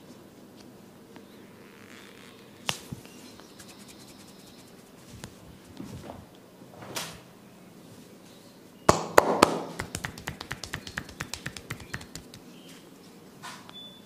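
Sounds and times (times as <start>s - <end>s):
sharp hand taps: 8.9s - 12.5s.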